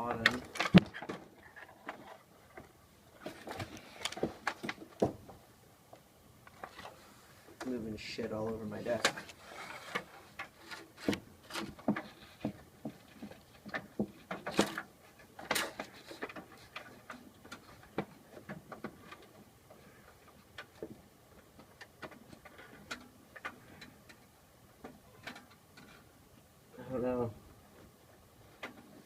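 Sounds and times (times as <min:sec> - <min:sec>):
rustling scrapes: 0:08.6 - 0:18.2.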